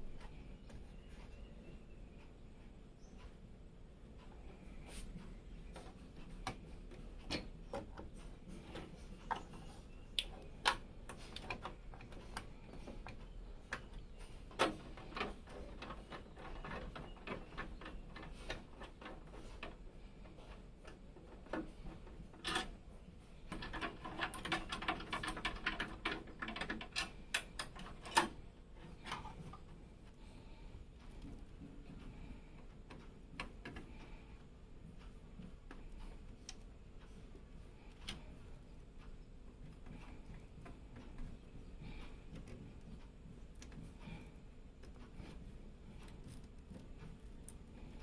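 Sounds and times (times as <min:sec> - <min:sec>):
computer parts clicking and rattling: 0:10.3 - 0:22.8, 0:23.4 - 0:29.6.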